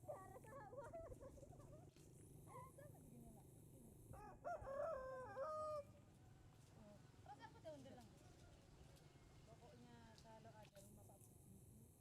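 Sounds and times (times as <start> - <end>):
rooster crowing: 4.2 - 5.9.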